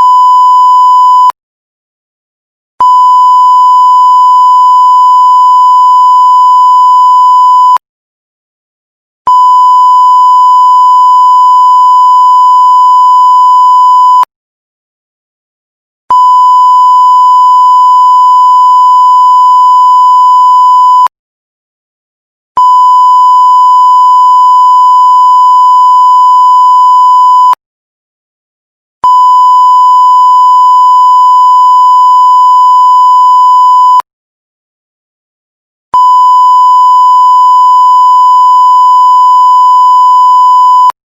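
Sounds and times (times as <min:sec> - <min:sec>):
high-pitched censorship beep: 0:22.6 - 0:27.6, 0:29.0 - 0:34.0, 0:36.0 - 0:41.0.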